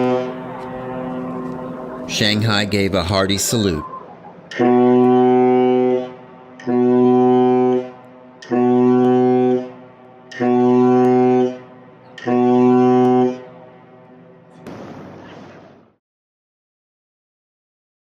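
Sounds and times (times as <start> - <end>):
ship's horn blasts: 0.0 - 3.8, 4.5 - 14.5.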